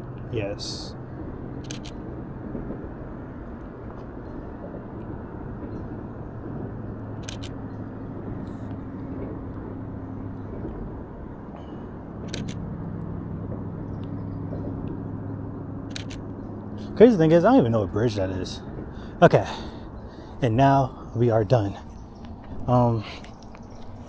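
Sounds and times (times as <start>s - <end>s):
low rumble: 0.0s - 23.0s
camera shutter double click: 1.6s - 2.0s, 7.2s - 7.6s, 12.3s - 12.6s, 15.9s - 16.2s.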